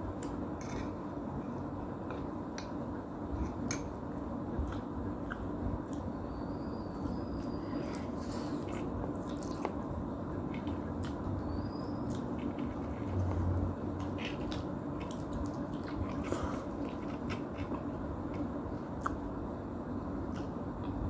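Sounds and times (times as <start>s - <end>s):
low hum: 4.6s - 16.8s
person chewing noodles: 7.0s - 11.3s, 12.0s - 19.2s.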